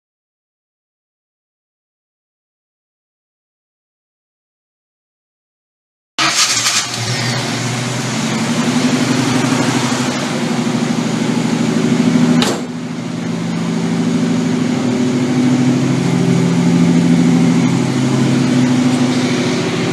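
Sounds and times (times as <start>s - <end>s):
engine running: 6.2s - 19.9s.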